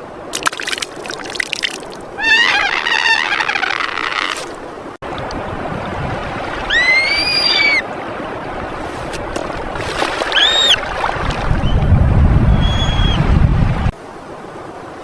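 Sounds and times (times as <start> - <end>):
watery background: 0.0 - 15.0
high clear animal calls: 2.2 - 4.5, 6.6 - 7.8, 10.4 - 10.8.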